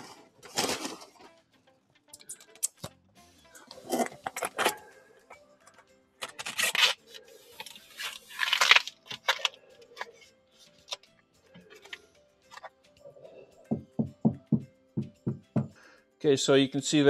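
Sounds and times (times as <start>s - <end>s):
rustling and handling noises: 0.0s - 1.4s, 3.6s - 12.8s
faint background music: 0.0s - 17.0s.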